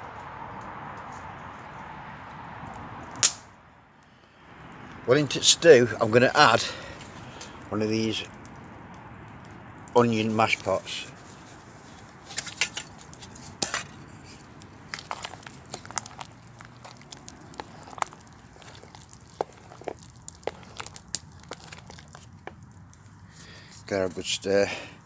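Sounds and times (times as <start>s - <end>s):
plastic pot clicks and crinkling: 10.4s - 23.1s.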